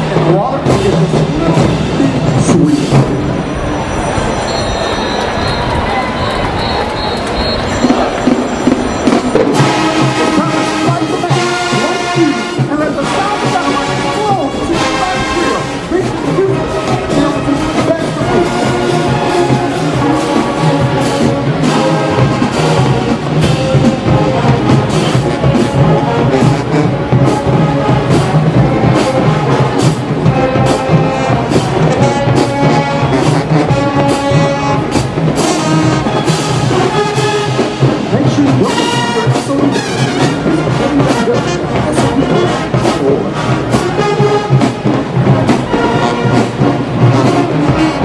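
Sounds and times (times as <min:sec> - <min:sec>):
steady drum beat: 0:00.0 - 0:03.3, 0:06.4 - 0:48.0
marching band brass: 0:00.0 - 0:48.0.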